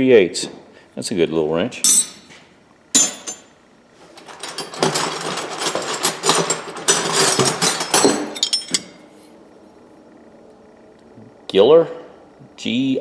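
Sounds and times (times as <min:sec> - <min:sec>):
metal tools clattering in a box: 0:01.9 - 0:02.4, 0:03.0 - 0:09.0.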